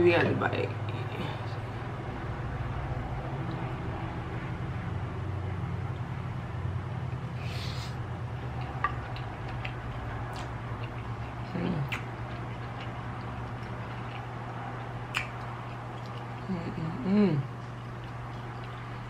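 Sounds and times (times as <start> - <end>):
steady low hum: 0.0 - 19.0
wet chewing and mouth clicks: 8.4 - 16.5, 17.5 - 19.0.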